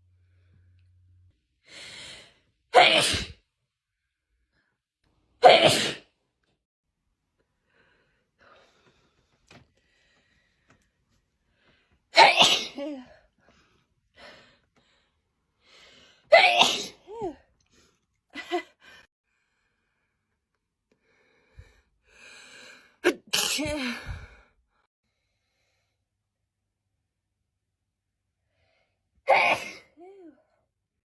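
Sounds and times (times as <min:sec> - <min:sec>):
person sneezing: 0:02.7 - 0:03.4, 0:05.4 - 0:06.1, 0:12.2 - 0:13.2, 0:16.3 - 0:17.4, 0:23.0 - 0:24.2, 0:29.3 - 0:30.4.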